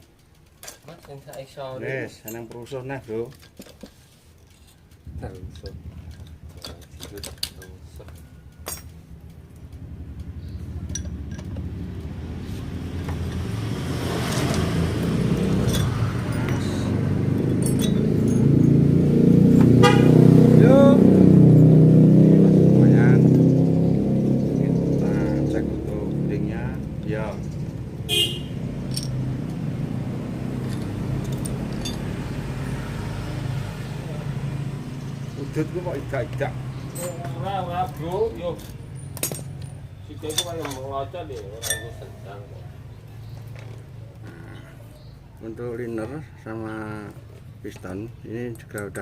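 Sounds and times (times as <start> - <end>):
vehicle engine rumbling: 0.0 - 49.0
sharp metallic clink: 5.5 - 9.0, 15.5 - 18.8, 27.2 - 29.3, 30.6 - 32.3, 38.4 - 42.2.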